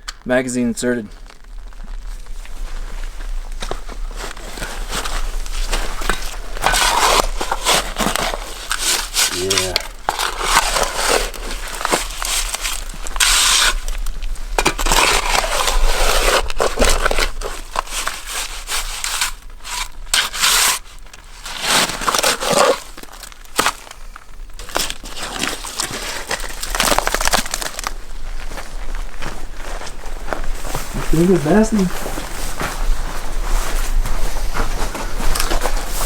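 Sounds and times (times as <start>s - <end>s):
rifle scraping through thick mud: 4.5s - 13.9s, 14.6s - 23.8s.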